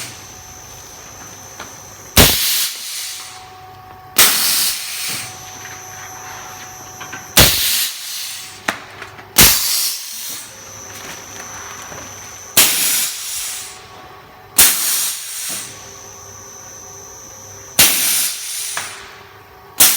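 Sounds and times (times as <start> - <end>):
steady machine hum: 0.0 - 19.9
loud machine hisses: 2.1 - 3.4, 4.2 - 5.5, 7.4 - 8.7, 9.4 - 10.6, 12.2 - 13.9, 14.6 - 16.7, 17.3 - 19.1.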